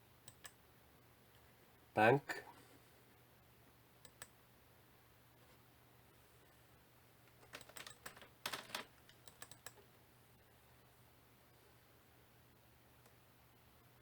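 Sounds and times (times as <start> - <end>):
faint keyboard typing: 0.2 - 0.6, 4.0 - 4.4, 7.2 - 10.0.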